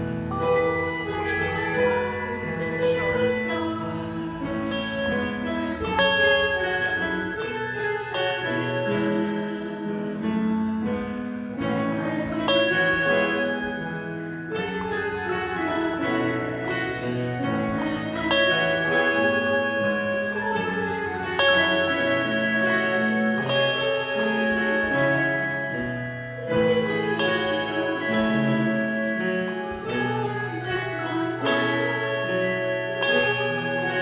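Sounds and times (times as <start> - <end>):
handbell choir melody: 0.0 - 34.0.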